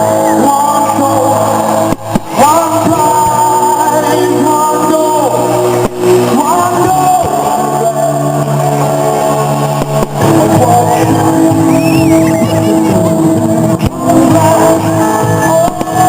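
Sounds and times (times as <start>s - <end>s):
male singer holding long notes: 0.0s - 16.0s.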